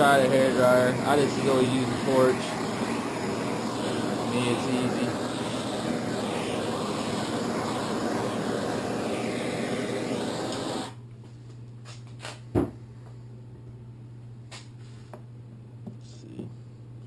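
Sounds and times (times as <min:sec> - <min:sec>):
gas torch flame hissing: 0:00.0 - 0:11.0.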